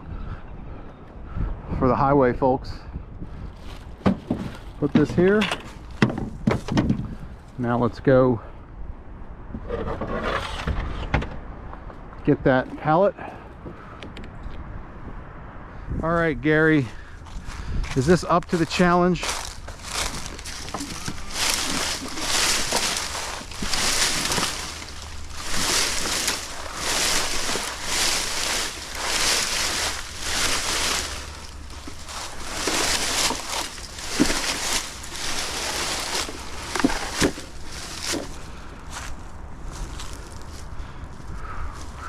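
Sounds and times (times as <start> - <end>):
sharp knocks: 4.0 - 7.1
pallet scraping over dry brush: 9.6 - 11.1, 18.0 - 39.1.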